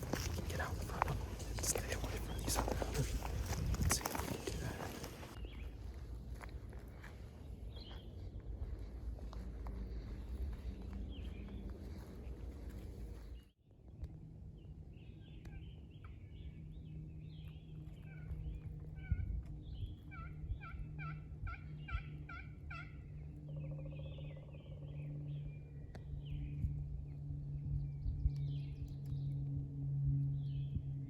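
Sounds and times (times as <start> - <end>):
songbird chirps: 0.0 - 13.4
low steady hum: 0.0 - 31.0
turkey yelps: 20.1 - 22.9.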